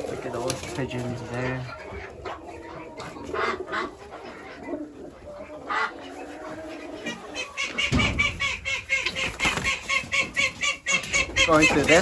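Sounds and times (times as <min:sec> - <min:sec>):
pigeons and poultry calling: 0:00.0 - 0:12.0
rapid chattering bird calls: 0:07.5 - 0:12.0.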